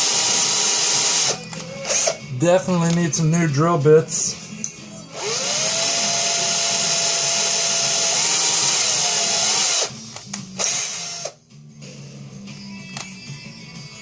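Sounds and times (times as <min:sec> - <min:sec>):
power drill whining: 0:00.0 - 0:02.2, 0:05.1 - 0:11.4.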